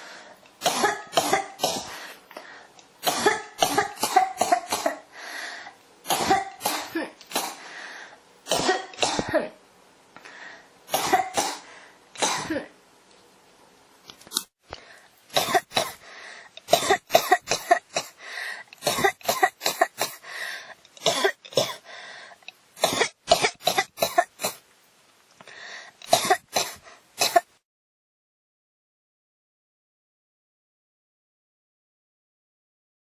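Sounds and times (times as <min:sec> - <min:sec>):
person coughing: 0:00.6 - 0:02.2, 0:03.0 - 0:05.1, 0:06.1 - 0:07.6, 0:08.5 - 0:09.6, 0:10.9 - 0:12.7, 0:15.4 - 0:16.0, 0:16.7 - 0:18.2, 0:18.8 - 0:20.2, 0:21.0 - 0:21.8, 0:22.8 - 0:24.6, 0:26.1 - 0:27.5.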